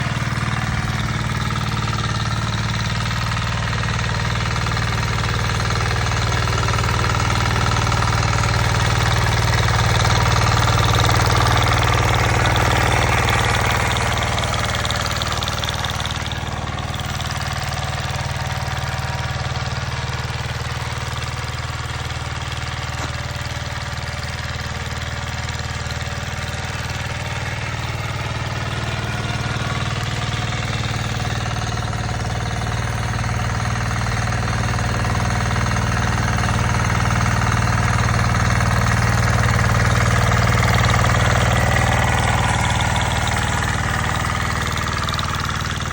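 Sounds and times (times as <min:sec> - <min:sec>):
tractor engine running: 0:00.0 - 0:45.9.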